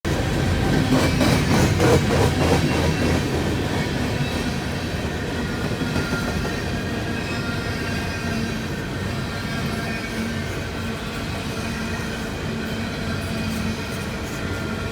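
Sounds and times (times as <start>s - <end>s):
freight train rumble: 0.0s - 14.9s
train wheels clacking over rail joints: 0.1s - 8.5s.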